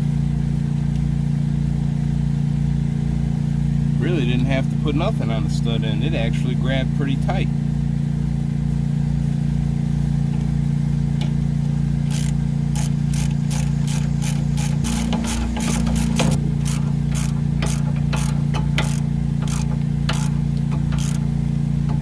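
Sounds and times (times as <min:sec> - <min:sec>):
steady low hum: 0:00.0 - 0:22.0
ratchet wrench clicking: 0:12.0 - 0:22.0.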